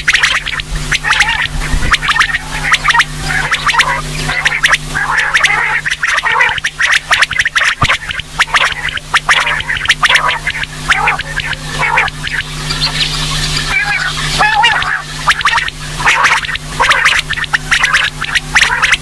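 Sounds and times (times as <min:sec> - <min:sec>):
quail calling: 0:00.0 - 0:19.0
steady low hum: 0:00.0 - 0:19.0.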